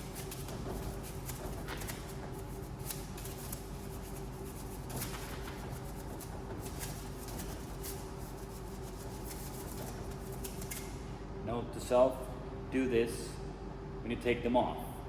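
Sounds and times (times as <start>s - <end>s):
brush scrubbing a wheel: 0.0s - 10.5s.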